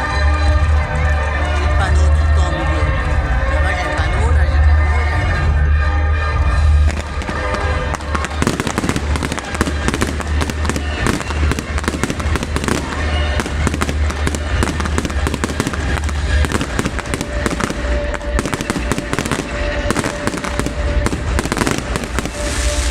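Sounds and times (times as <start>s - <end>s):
music playing: 0.0s - 22.9s
fireworks crackling and banging: 6.5s - 22.9s.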